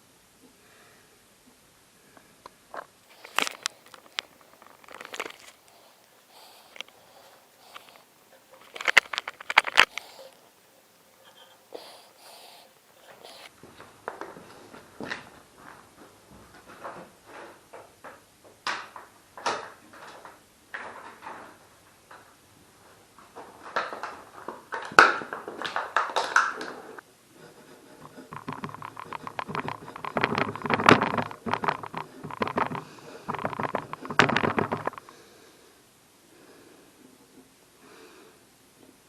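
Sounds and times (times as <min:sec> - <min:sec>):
knocks and clicks of hand work: 0:28.0 - 0:35.1
rapid rattling buzz: 0:28.0 - 0:35.1.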